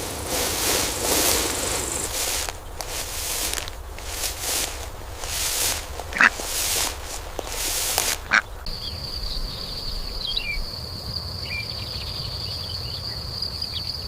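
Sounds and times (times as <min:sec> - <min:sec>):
rustling: 0:00.0 - 0:08.7
high insect trill: 0:00.0 - 0:13.7.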